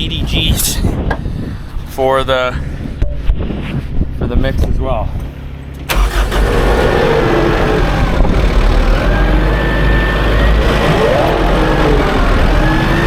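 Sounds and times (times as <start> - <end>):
tractor engine running: 5.6 - 13.0.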